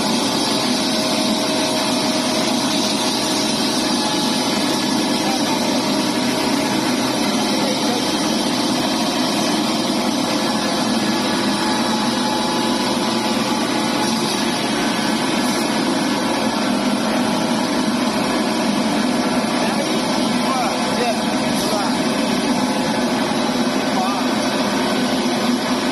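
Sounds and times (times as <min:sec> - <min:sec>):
grinder machine running: 0:00.0 - 0:25.9.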